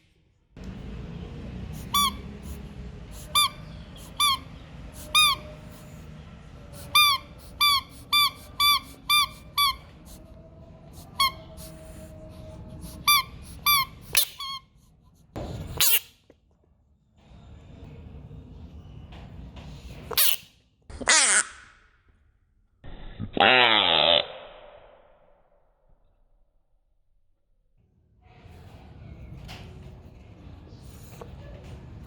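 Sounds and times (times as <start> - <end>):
low background hum: 0.0 - 21.2
high squeaks: 1.8 - 2.6, 3.2 - 6.0, 6.8 - 10.2, 11.0 - 12.2, 12.8 - 14.8, 15.8 - 16.2.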